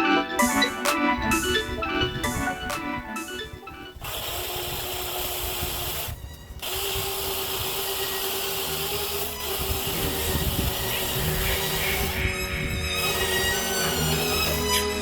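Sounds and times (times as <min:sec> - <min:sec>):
chainsaw running: 0:04.0 - 0:15.0.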